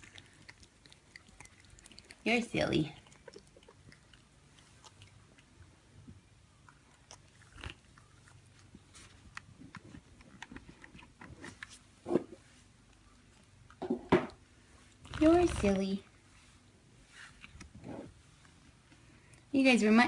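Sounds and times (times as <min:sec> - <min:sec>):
kittens chewing wet food: 0:00.0 - 0:15.8.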